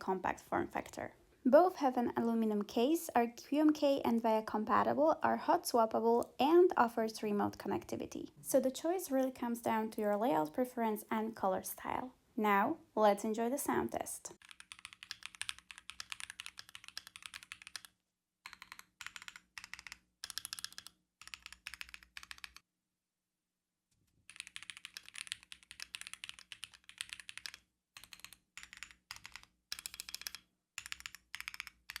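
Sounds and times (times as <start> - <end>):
mechanical keyboard typing: 14.4 - 17.9, 18.5 - 22.6, 24.3 - 32.0.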